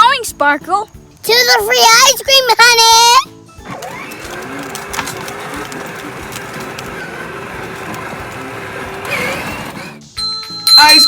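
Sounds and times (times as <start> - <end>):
toy car whirring: 3.6 - 10.1.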